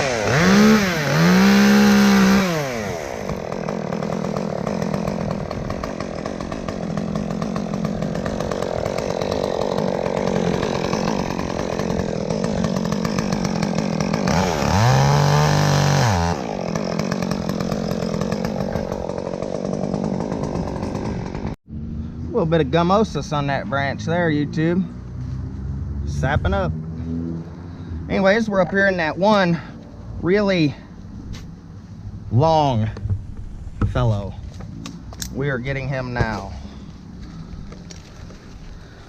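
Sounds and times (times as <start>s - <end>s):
chainsaw idling and revving: 0.0s - 21.6s, 34.5s - 39.0s.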